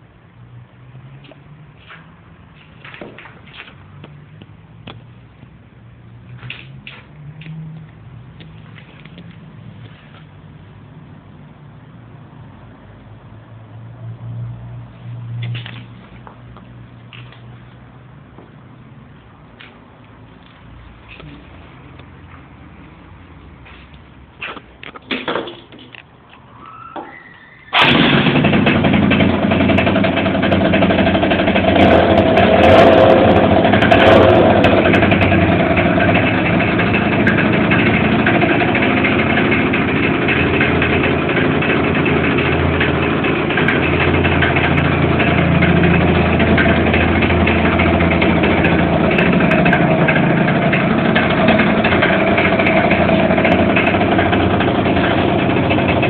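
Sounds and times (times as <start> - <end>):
scooter engine idling: 26.6 - 56.0.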